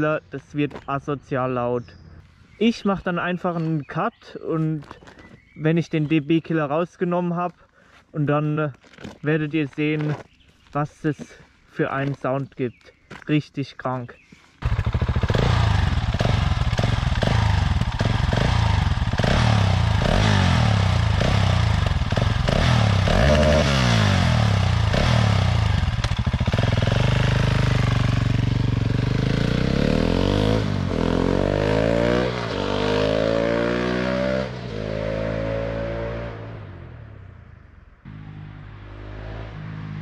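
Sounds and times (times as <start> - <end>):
motorcycle engine revving: 14.6 - 37.4, 38.0 - 40.0.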